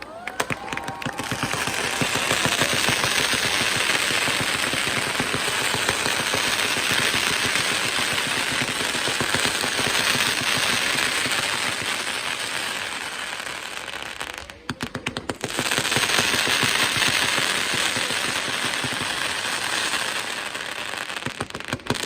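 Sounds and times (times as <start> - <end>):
rising firework whistles: 0.0 - 14.6
rapid firecracker bangs: 0.0 - 22.0.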